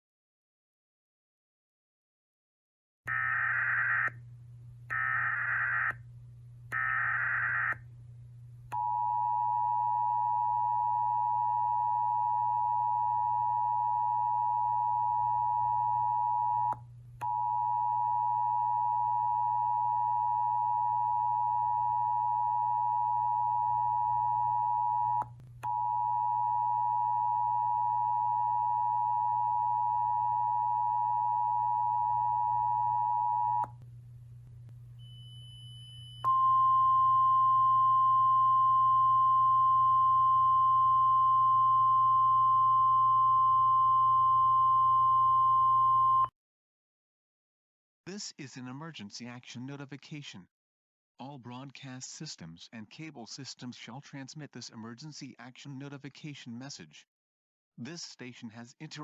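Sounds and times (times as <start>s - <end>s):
low steady hum: 3.1s - 46.3s.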